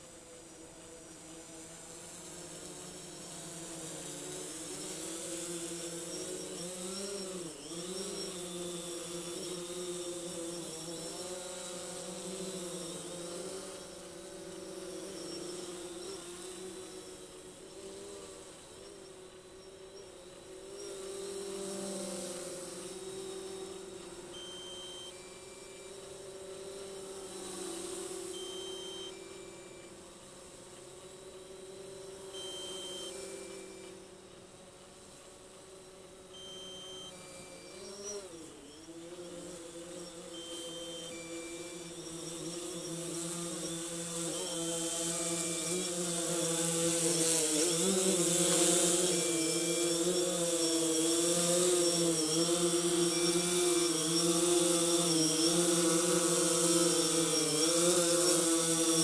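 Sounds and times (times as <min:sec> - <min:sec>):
drone propellers buzzing: 0:00.0 - 0:59.0
short high beeps: 0:24.4 - 0:25.9, 0:28.4 - 0:29.9, 0:32.4 - 0:33.9, 0:36.4 - 0:37.8, 0:40.4 - 0:41.8.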